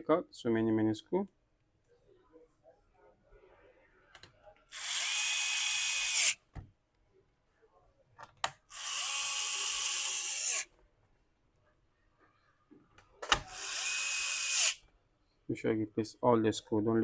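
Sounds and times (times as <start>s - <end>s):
electric screwdriver whine: 4.7s - 6.4s, 8.7s - 10.7s, 13.4s - 14.8s.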